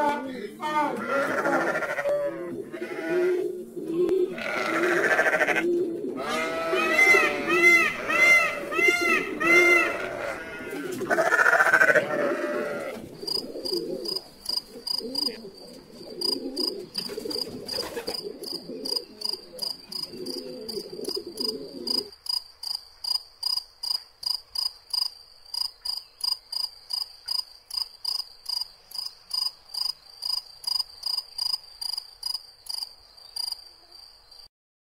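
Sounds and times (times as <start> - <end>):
jumble of animal calls: 0.0 - 22.1
repeated high insect-like chirp: 12.8 - 34.5.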